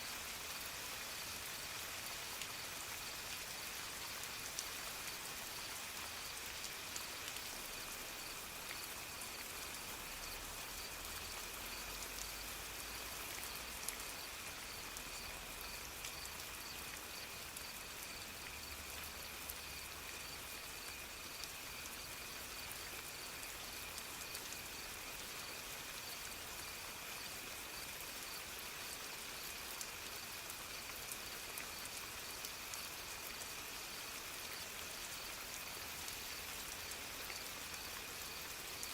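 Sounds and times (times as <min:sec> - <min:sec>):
soft rain falling: 0:00.0 - 0:38.9.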